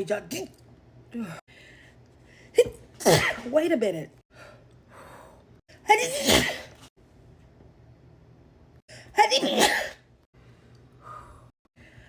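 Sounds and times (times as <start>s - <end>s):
woman sneezing loudly: 3.0s - 3.5s, 5.9s - 6.9s, 9.2s - 10.0s.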